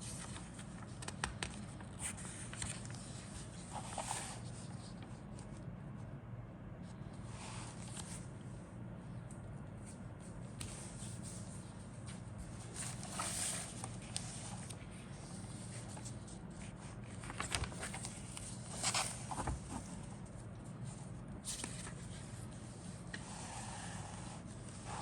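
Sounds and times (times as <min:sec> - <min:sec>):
steady low hum: 0:00.0 - 0:25.0.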